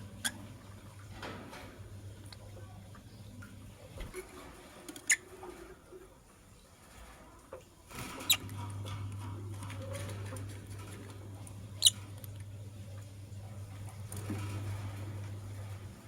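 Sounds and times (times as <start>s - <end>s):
birds scratching in cage: 7.9s - 12.6s, 13.4s - 16.0s
steady low hum: 8.0s - 16.0s.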